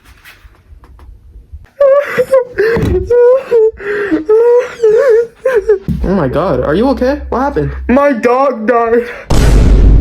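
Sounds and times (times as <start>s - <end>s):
person wailing and sobbing: 1.7s - 6.6s.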